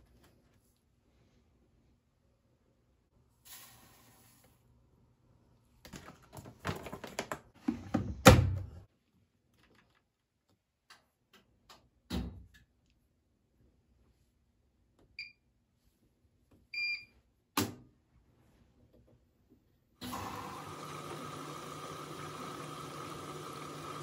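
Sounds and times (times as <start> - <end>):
household handling noises: 5.7 - 8.8
electronic appliance beeps: 16.8 - 17.1.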